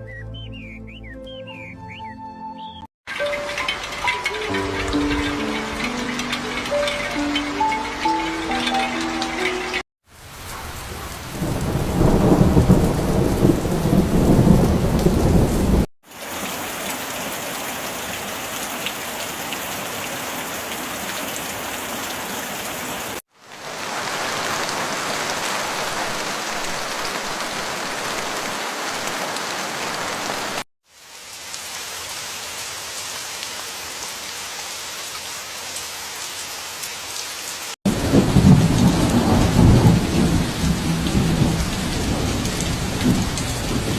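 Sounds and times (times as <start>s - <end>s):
heavy rain falling: 3.1s - 43.9s
low rumble of thunder: 10.9s - 15.9s, 37.9s - 43.9s.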